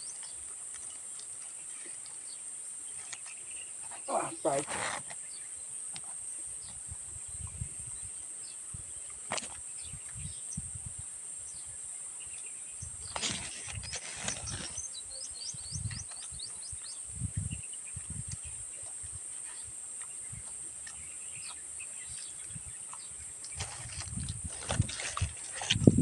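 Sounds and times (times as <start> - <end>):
crackly rustle: 0.0 - 5.3, 13.0 - 15.0, 18.2 - 26.0
crickets droning: 0.0 - 26.0.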